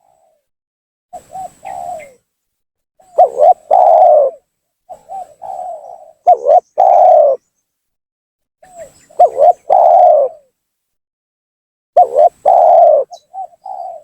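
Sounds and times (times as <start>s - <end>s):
dove cooing: 1.2s - 2.2s, 3.0s - 7.4s, 8.6s - 10.5s, 12.0s - 14.0s.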